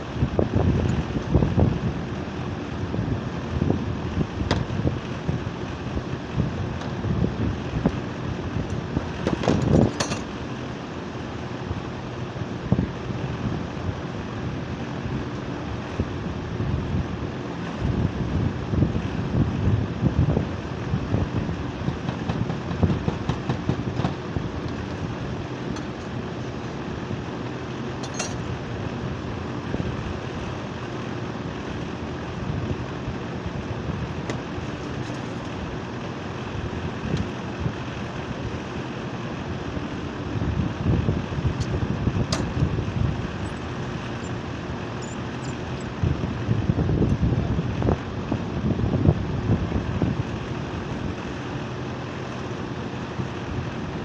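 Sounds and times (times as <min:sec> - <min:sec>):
air conditioner compressor hum: 0:00.0 - 0:54.0
wind buffeting microphone: 0:15.8 - 0:25.7, 0:39.7 - 0:44.0, 0:45.9 - 0:51.3.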